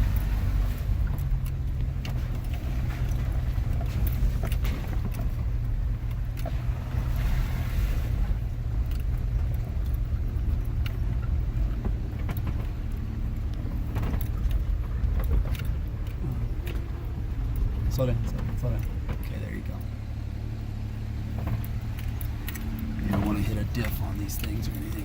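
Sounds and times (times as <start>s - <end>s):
low engine rumble: 0.0s - 25.0s.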